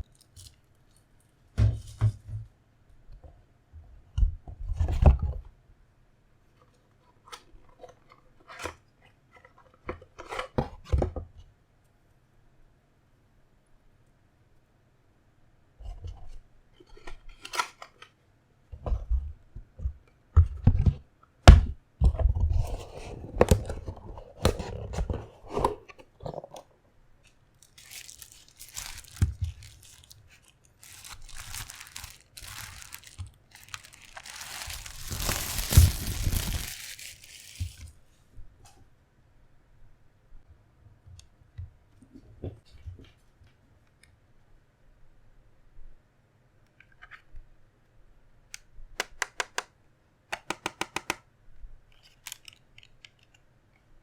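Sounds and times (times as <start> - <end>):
wrapping crinkling and tearing: 27.6 - 37.9.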